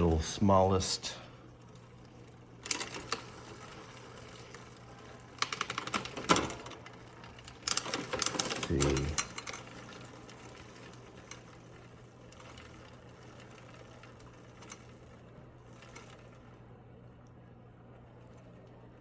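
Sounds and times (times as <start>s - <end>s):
bicycle chain running: 0.0s - 16.8s
steady low hum: 0.0s - 19.0s.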